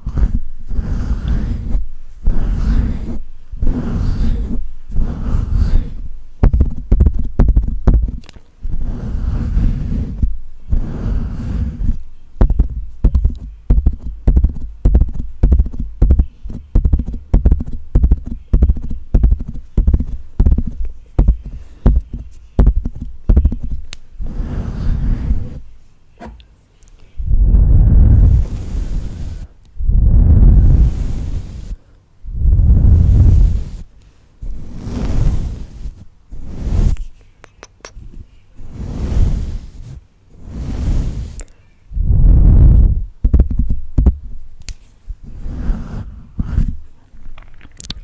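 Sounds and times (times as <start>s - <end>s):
tongue clicks and mouth pops: 47.4s - 48.0s.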